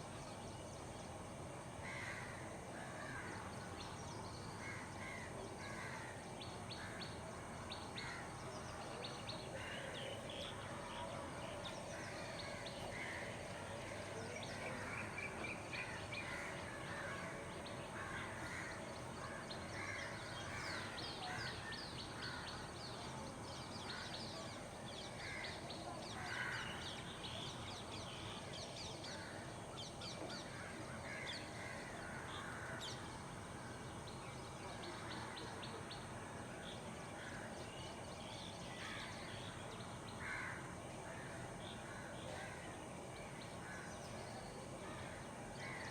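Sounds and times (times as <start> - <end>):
urban background noise: 0.0 - 45.9
crows cawing: 17.9 - 18.8, 40.2 - 40.6.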